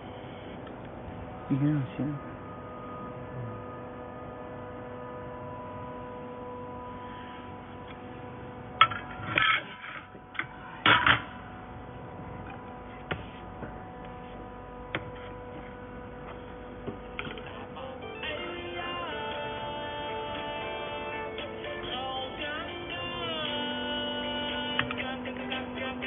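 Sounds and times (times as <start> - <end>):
welding equipment whine: 0.0 - 26.0.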